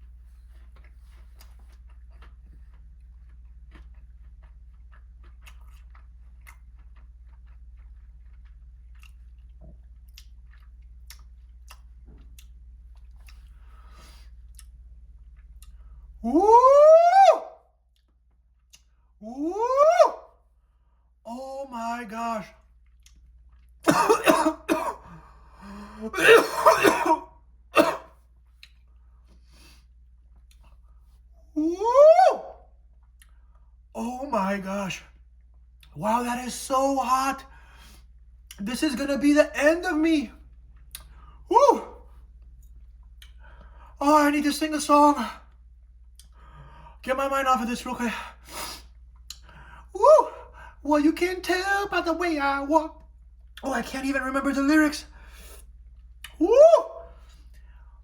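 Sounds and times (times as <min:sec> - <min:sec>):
low electrical hum: 0:00.0 - 0:58.0
chewing crunches: 0:00.1 - 0:16.2
woman coughing: 0:23.9 - 0:25.1, 0:26.1 - 0:28.1.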